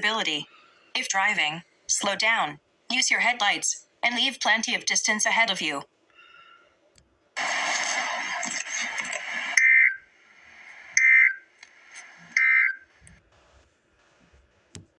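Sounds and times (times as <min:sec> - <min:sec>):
shrill digital data tones: 0:07.4 - 0:13.0
harsh buzzing noise: 0:07.4 - 0:13.4.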